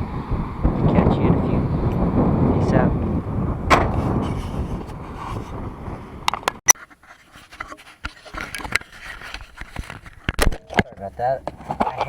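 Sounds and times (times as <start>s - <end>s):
low rumble: 0.0s - 6.5s.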